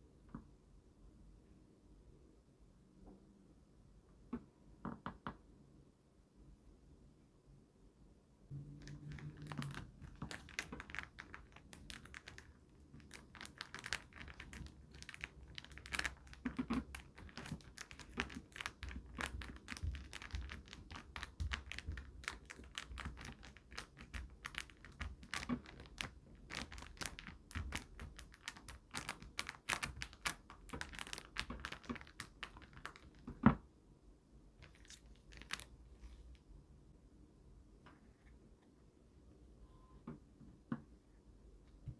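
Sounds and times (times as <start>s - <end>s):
packaging crinkling and tearing: 8.7s - 33.4s, 34.6s - 35.7s.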